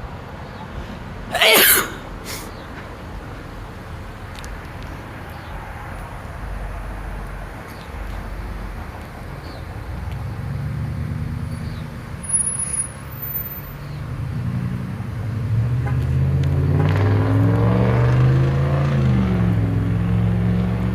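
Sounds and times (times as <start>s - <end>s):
truck engine revving: 16.1s - 20.9s.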